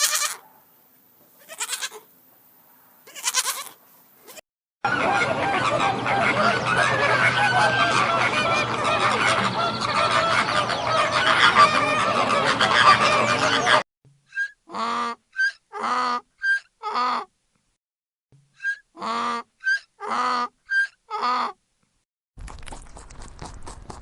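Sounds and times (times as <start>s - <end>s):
flock of fowl calling: 4.9s - 13.8s
bird chirp and call: 4.9s - 14.6s.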